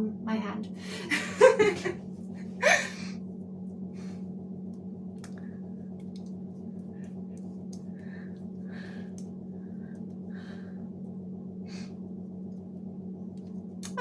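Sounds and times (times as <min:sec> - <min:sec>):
steady low hum: 0:00.0 - 0:14.0
person sighing: 0:02.6 - 0:03.1.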